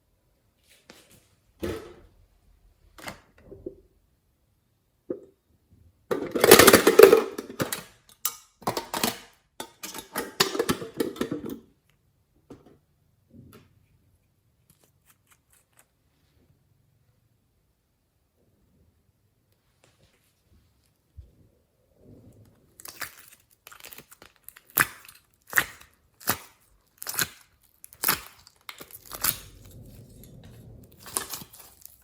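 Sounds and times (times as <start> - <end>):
slime squelching and popping: 22.7 - 32.0.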